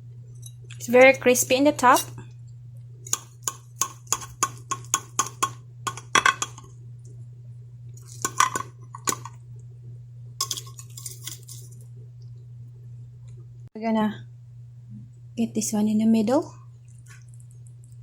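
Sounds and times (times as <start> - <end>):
steady low hum: 0.0 - 18.0
utensil tapping on crisp crust: 3.1 - 6.7.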